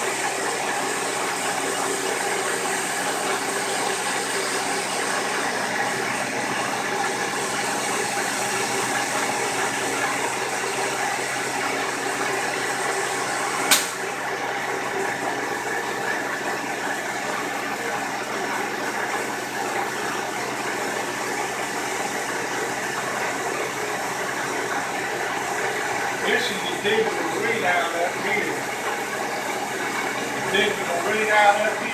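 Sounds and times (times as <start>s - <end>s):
milling machine hum and hiss: 0.0s - 31.9s
sharp click: 13.7s - 14.0s.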